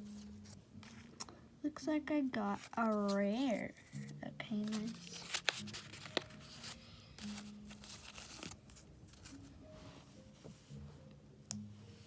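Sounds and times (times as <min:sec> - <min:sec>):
plastic bag crinkling and tearing: 0:04.6 - 0:08.7.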